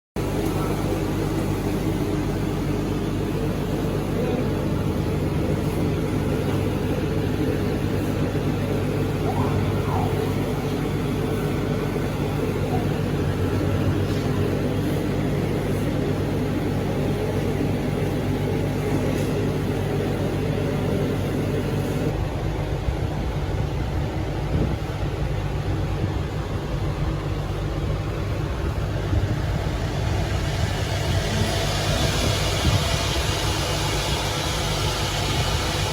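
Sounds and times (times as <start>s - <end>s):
cutting machine humming: 28.4s - 35.9s.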